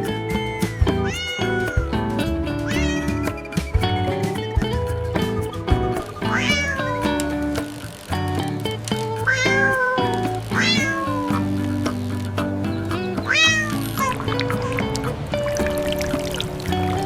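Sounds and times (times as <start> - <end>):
background music with held notes: 0.0 - 17.0
cat meowing: 0.9 - 2.0, 2.6 - 3.4, 6.3 - 7.4, 9.2 - 11.6, 13.3 - 15.0.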